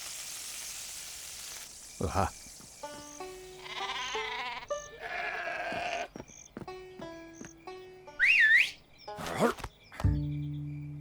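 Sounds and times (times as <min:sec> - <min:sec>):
light background music: 0:02.8 - 0:05.8, 0:06.6 - 0:11.0
cartoon sheep bleating: 0:03.6 - 0:06.1.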